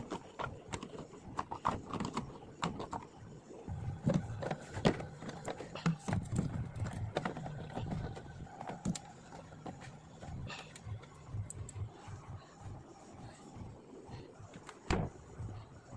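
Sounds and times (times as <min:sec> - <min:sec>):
plastic bottles clacking together: 0:03.8 - 0:10.8.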